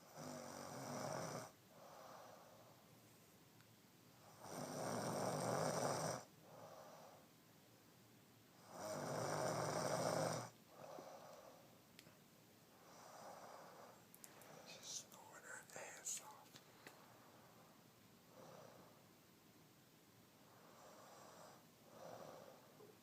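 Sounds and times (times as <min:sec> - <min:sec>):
loud rattling snores: 0:00.0 - 0:01.5, 0:04.3 - 0:06.3, 0:08.6 - 0:10.6
soft breathing: 0:01.7 - 0:03.5, 0:06.4 - 0:07.4, 0:10.7 - 0:11.8, 0:12.7 - 0:19.1, 0:20.4 - 0:23.0.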